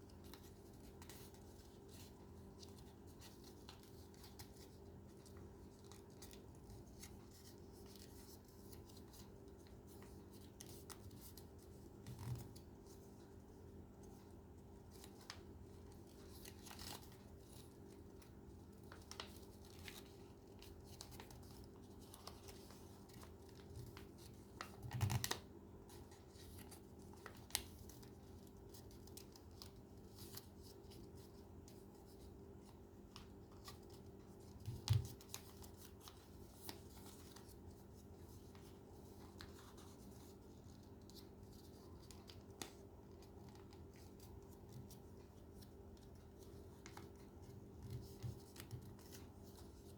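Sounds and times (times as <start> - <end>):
paper crinkling: 14.0 - 49.9.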